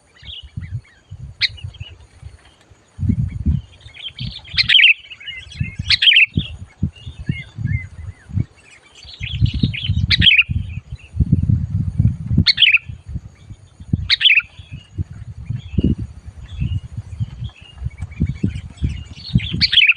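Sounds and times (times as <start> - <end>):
low rumbling noise: 5.4 - 19.8
bulbul chattering: 12.5 - 19.9.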